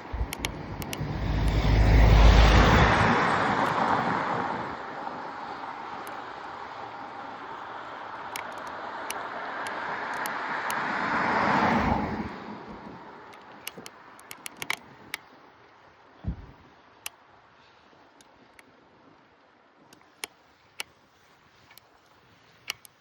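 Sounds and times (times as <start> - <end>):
sharp clicks: 0.0 - 2.8, 8.2 - 10.8, 13.3 - 15.3, 22.6 - 23.0
car passing by: 0.0 - 13.4.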